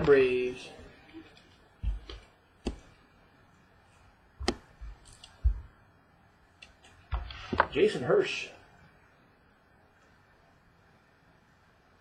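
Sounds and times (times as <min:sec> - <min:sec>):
soft low thumps: 0:04.4 - 0:05.8.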